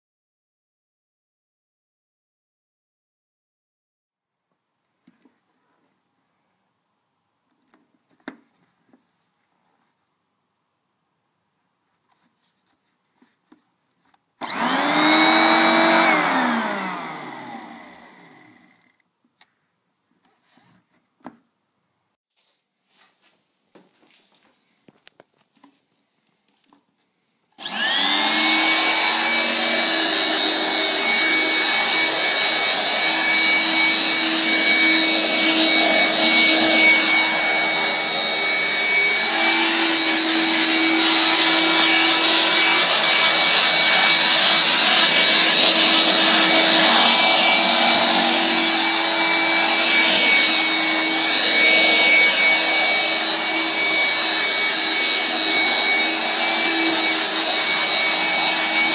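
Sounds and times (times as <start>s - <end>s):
vacuum cleaner motor whining: 14.4s - 19.0s, 27.6s - 58.9s.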